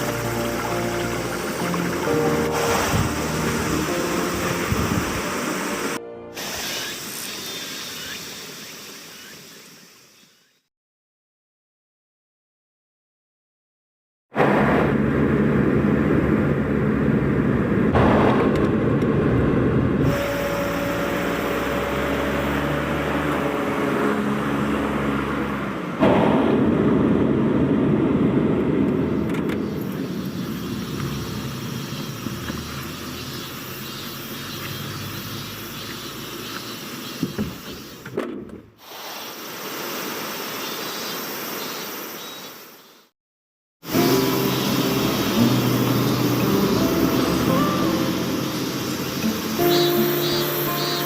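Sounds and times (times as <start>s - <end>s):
road noise: 0.0s - 10.1s, 14.4s - 43.0s, 43.8s - 51.0s
steady hiss: 0.0s - 10.6s, 29.8s - 38.0s, 38.8s - 43.0s, 43.9s - 51.0s
car engine while driving: 14.4s - 38.2s, 44.1s - 50.9s.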